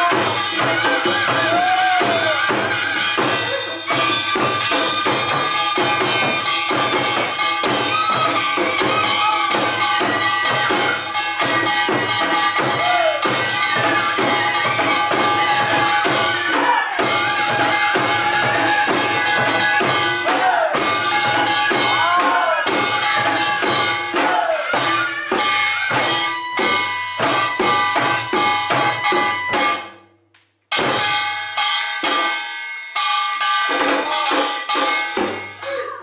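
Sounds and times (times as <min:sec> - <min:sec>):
barrel drum beaten fast: 0:00.0 - 0:29.9
ringing percussion: 0:00.0 - 0:36.0
sliding melody: 0:24.7 - 0:29.9.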